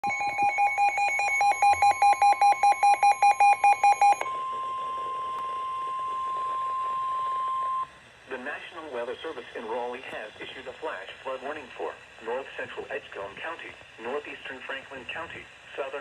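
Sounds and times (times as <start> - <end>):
rapid two-pitch electronic beeps: 0.0 - 4.3
steady warning alarm tone: 0.0 - 7.9.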